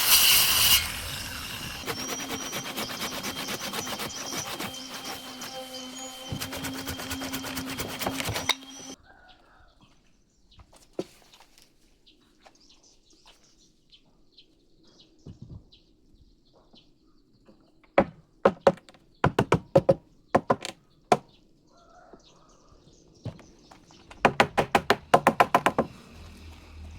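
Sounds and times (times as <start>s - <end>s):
faint birds chirping: 1.6s - 25.4s
hammer striking wood: 1.8s - 9.0s, 18.0s - 21.2s, 24.1s - 26.1s.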